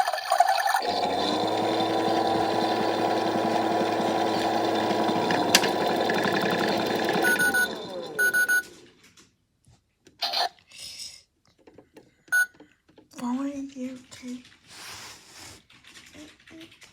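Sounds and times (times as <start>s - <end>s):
toy washing machine motor: 0.0s - 9.0s
short beeps: 7.2s - 8.7s.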